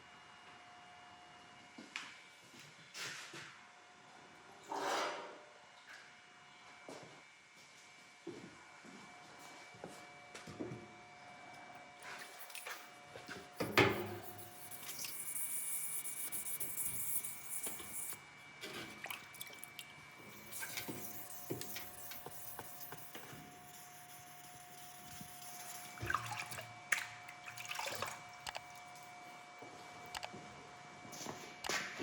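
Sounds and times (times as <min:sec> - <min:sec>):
faint steady hum: 0:12.0 - 0:30.8
water dripping and splashing: 0:18.9 - 0:22.3, 0:25.8 - 0:28.8.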